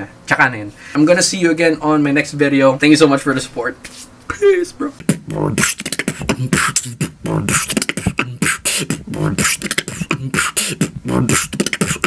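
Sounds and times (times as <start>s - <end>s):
person beatboxing: 4.8s - 12.0s.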